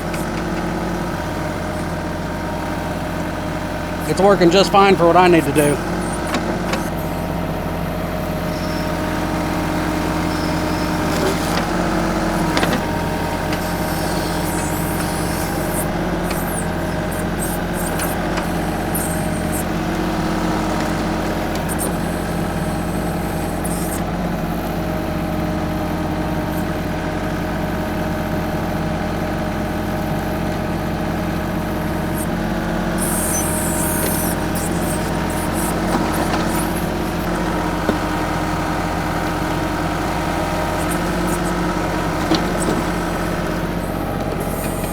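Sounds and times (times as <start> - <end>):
tractor diesel engine running: 0.0 - 44.9
hissing bursts: 10.2 - 19.6, 32.9 - 37.8.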